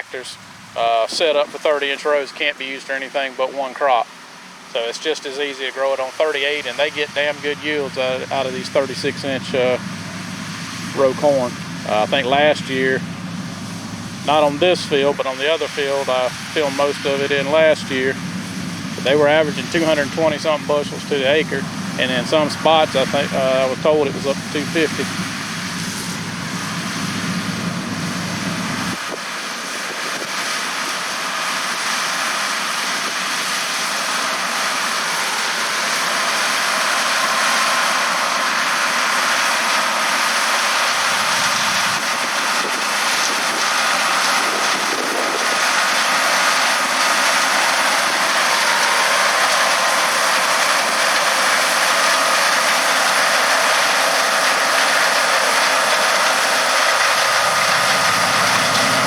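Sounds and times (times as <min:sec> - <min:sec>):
faint high whine: 0:00.0 - 0:29.0
combine harvester running: 0:00.0 - 0:59.0.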